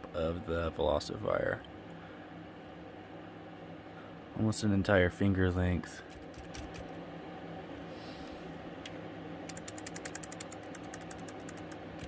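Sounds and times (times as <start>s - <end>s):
steady low hum: 0.0s - 12.0s
mechanical keyboard keys clicking: 6.1s - 6.9s, 9.5s - 12.0s.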